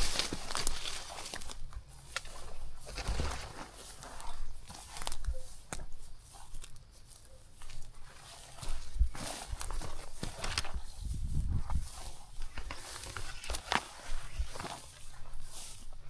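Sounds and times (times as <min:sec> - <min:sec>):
footsteps crunching through undergrowth: 0:00.0 - 0:16.0
twigs snapping underfoot: 0:00.0 - 0:16.0.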